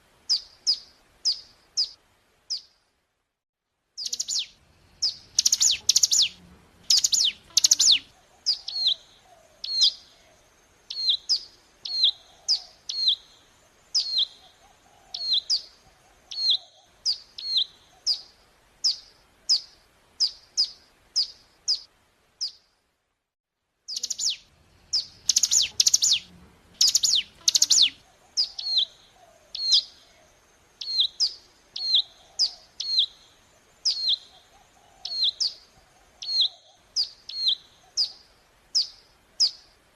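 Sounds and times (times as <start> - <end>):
bird high chirps sliding down: 23.9 - 28.9.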